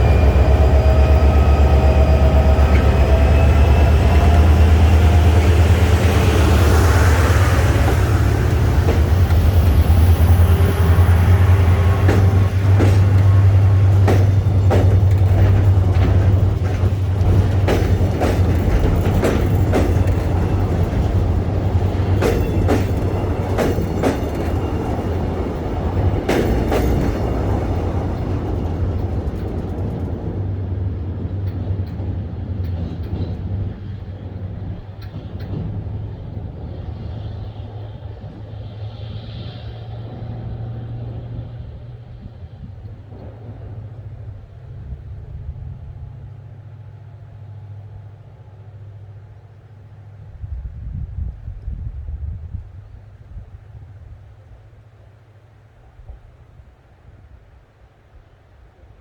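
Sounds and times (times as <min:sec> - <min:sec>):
train engine drone: 0:00.0 - 0:59.0
wheel clicks over rail joints: 0:08.5 - 0:36.3.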